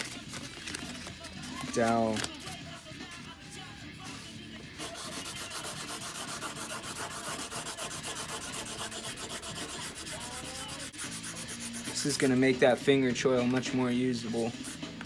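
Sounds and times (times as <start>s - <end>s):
sandpaper strokes on metal: 4.8s - 12.6s.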